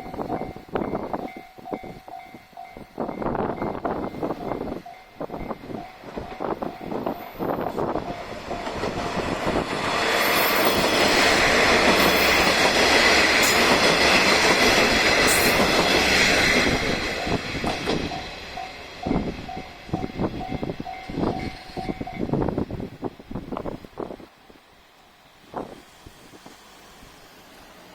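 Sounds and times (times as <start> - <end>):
level crossing warning bell: 0.0 - 7.4
diesel railcar engine: 0.0 - 27.9.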